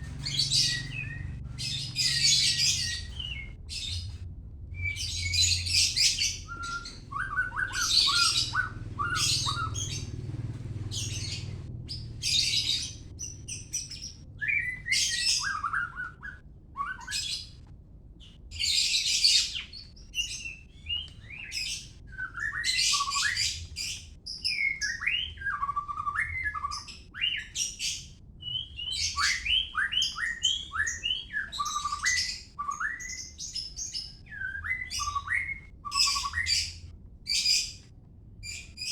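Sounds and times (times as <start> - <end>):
songbird singing varied song: 0.0 - 4.2, 4.8 - 10.2, 18.6 - 37.8.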